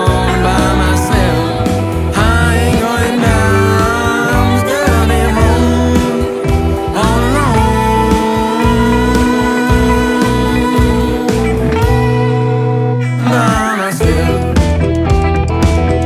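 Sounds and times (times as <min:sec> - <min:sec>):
person singing: 0:00.0 - 0:14.8
blues rock band playing: 0:00.0 - 0:16.0
electric guitar: 0:00.0 - 0:16.0.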